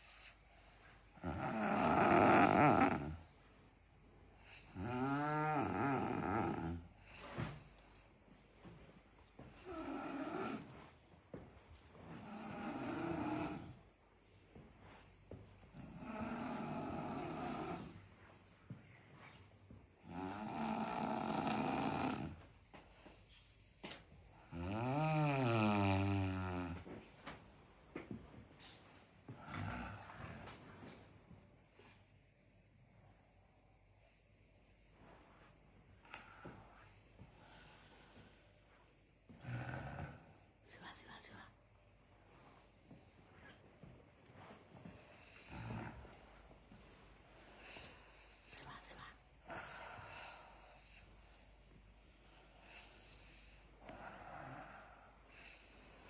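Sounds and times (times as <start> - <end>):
person snoring: 1.2 - 3.2, 4.7 - 6.9, 12.2 - 13.8, 15.8 - 18.0, 20.0 - 22.4, 24.4 - 26.8.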